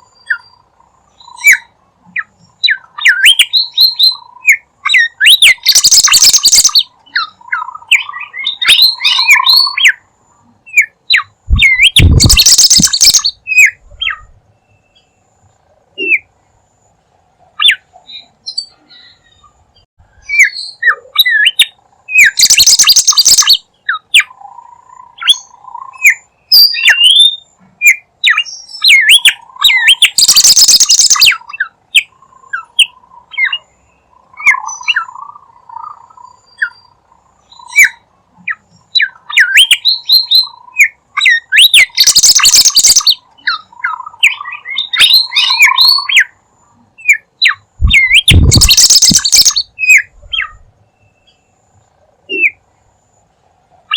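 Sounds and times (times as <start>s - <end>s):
bird chirping and whistling: 1.2s - 10.0s, 10.7s - 14.3s, 20.2s - 24.3s, 25.2s - 33.7s, 38.9s - 46.3s, 47.0s - 50.6s.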